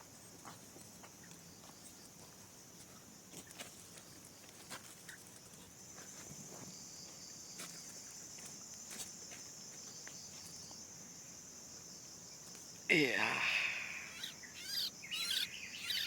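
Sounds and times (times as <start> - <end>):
high-pitched insect drone: 12.9 - 16.0.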